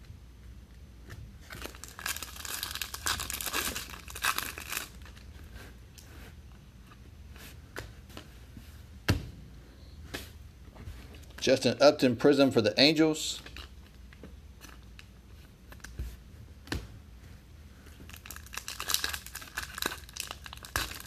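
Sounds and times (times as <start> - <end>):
foil wrapper tearing and crinkling: 1.6 - 5.2, 18.1 - 21.0.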